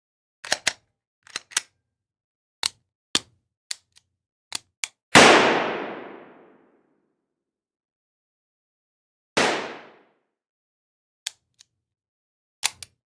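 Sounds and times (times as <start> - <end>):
gun mechanism clicks: 0.4 - 1.8, 12.6 - 13.0
loud gunshot: 5.2 - 6.4, 9.4 - 10.0.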